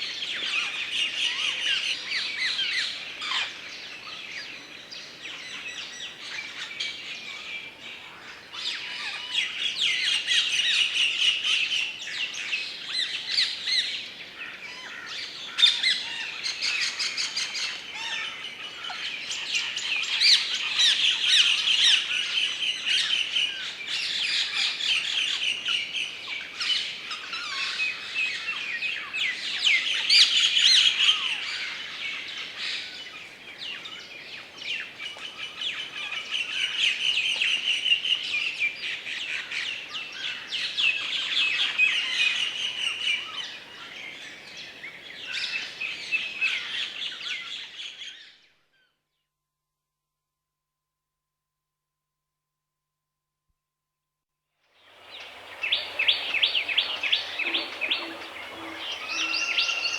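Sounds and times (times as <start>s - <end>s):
songbirds chirping and warbling: 54.8s - 59.9s.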